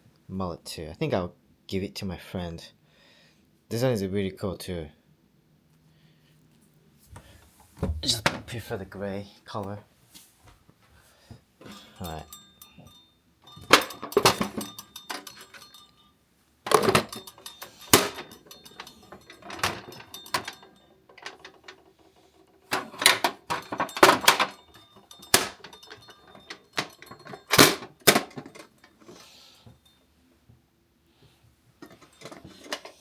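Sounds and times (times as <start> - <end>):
tools clicking and knocking: 11.6 - 16.1, 16.7 - 29.8, 31.8 - 33.0.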